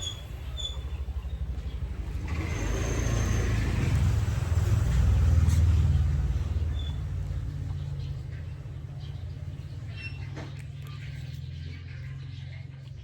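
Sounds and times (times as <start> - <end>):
motorcycle passing by: 0.0 - 10.0.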